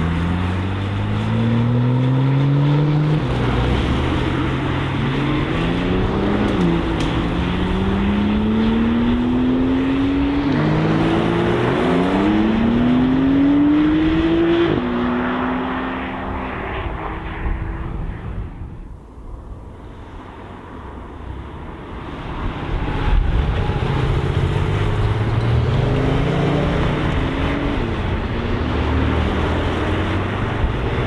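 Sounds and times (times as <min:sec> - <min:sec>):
sports car engine accelerating: 0:00.0 - 0:18.0, 0:22.8 - 0:31.0.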